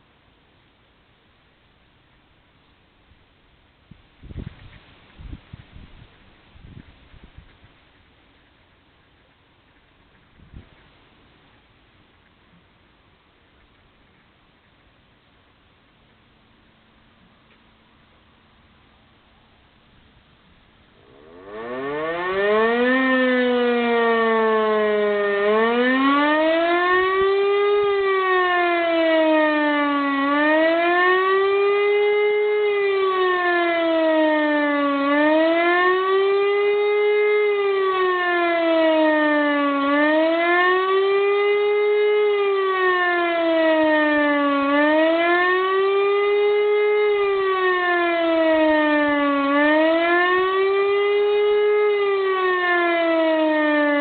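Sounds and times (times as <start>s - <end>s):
electric motor siren wailing: 21.0s - 54.0s.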